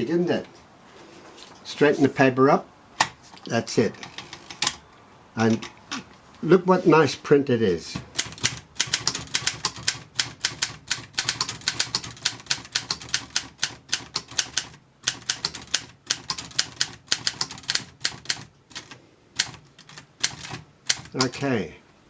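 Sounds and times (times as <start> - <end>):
manual typewriter typing: 7.9 - 21.5.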